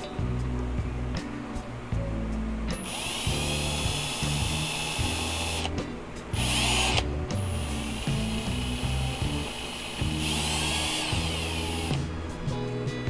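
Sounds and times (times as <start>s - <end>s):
background music: 0.0s - 13.0s
cordless drill whining: 2.7s - 12.2s.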